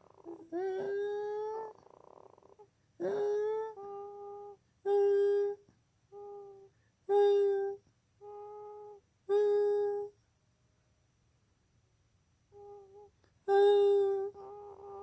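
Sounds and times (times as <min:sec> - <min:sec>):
man humming: 0:00.0 - 0:01.7, 0:03.0 - 0:05.6, 0:06.2 - 0:10.1, 0:12.6 - 0:15.0
baby humming: 0:00.0 - 0:10.1, 0:12.5 - 0:15.0.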